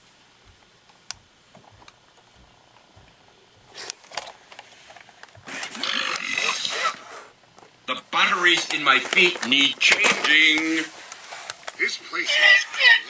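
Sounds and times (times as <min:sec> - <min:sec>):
robot speaker burp: 0:05.7 - 0:06.9.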